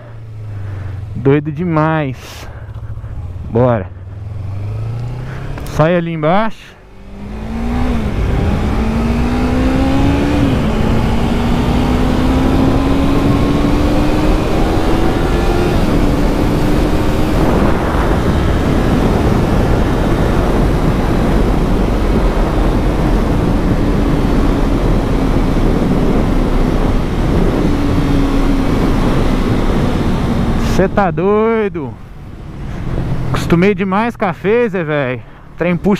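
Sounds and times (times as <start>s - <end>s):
motorcycle engine accelerating: 0.0s - 6.2s, 6.8s - 34.1s
wind on microphone: 7.4s - 30.6s.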